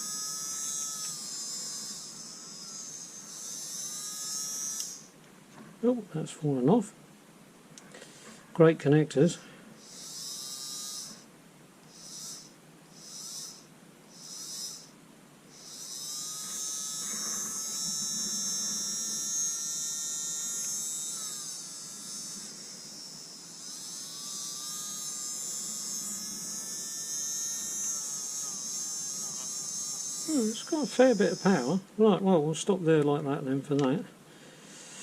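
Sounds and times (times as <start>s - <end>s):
small electric motor whining: 0.0s - 5.2s, 9.8s - 32.0s.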